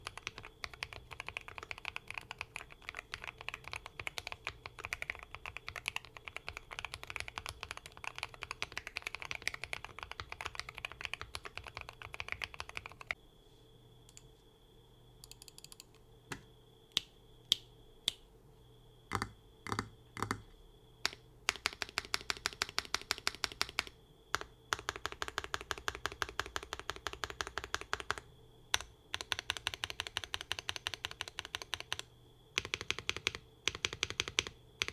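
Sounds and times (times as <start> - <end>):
mechanical keyboard typing: 0.0 - 13.2, 21.0 - 34.9.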